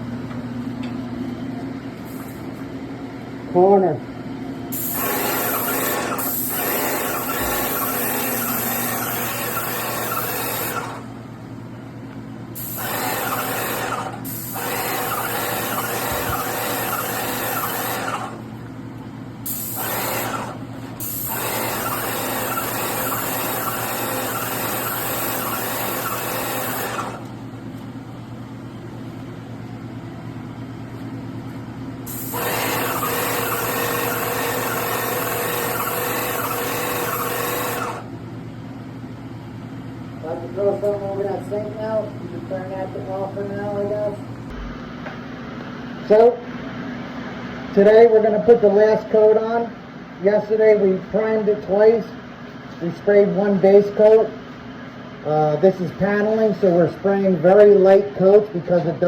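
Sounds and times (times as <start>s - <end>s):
paint sprayer gun hissing: 4.7s - 11.2s, 12.6s - 18.4s, 19.4s - 27.4s, 32.1s - 38.1s.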